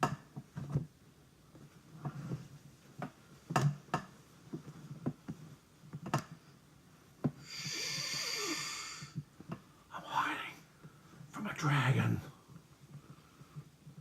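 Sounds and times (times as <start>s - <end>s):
breathy hiss: 7.4s - 9.3s, 9.9s - 12.4s.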